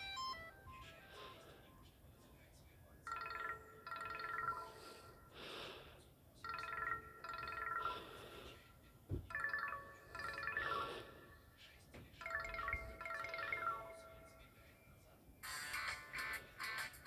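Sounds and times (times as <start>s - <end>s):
phone ringtone electronic notes: 0.0s - 1.8s, 3.1s - 5.3s, 6.4s - 8.3s, 9.3s - 11.3s, 12.2s - 17.0s.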